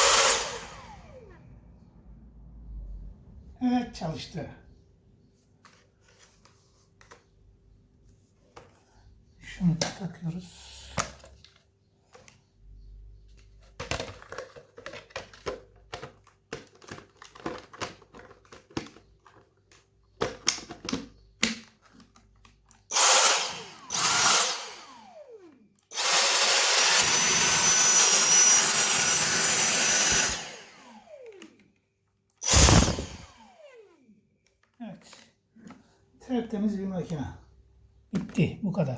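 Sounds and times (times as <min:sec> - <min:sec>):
vacuum motor whining: 0:00.0 - 0:01.5, 0:22.9 - 0:31.7, 0:32.4 - 0:34.2
plastic parts clicking: 0:13.3 - 0:22.9.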